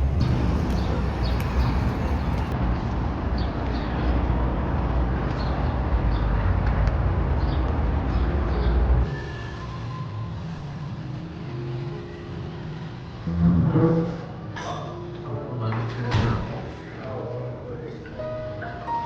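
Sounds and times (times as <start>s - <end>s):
low rumble of road traffic: 0.0s - 19.0s
small birds chirping: 0.6s - 2.6s.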